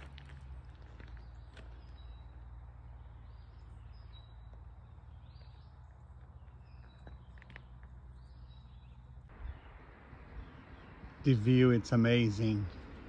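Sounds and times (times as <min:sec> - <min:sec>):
faint high bird chirps: 0:01.0 - 0:11.2.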